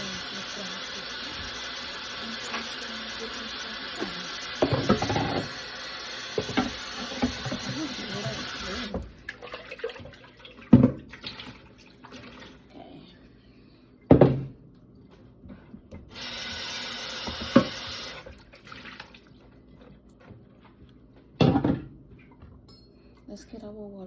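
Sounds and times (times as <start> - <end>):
tap running into sink: 3.5 - 9.1, 16.3 - 18.2
splashing and clattering in water: 9.3 - 12.6.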